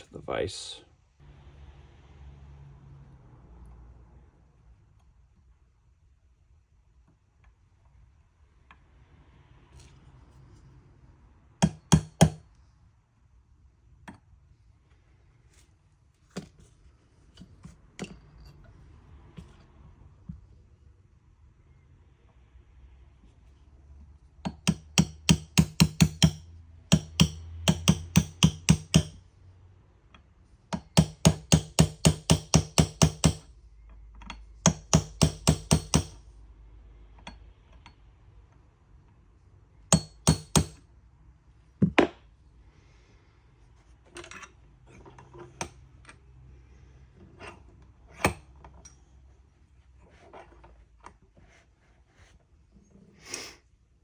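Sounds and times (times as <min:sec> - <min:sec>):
light hammer taps on metal: 0:24.5 - 0:29.2.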